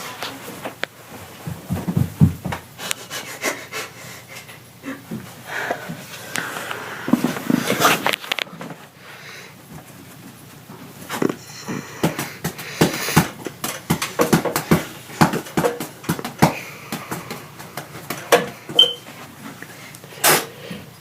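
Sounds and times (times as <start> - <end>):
person breathing noisily: 3.0 - 7.8, 9.0 - 9.6, 11.2 - 13.4, 16.4 - 17.6
person sniffing: 11.1 - 13.4.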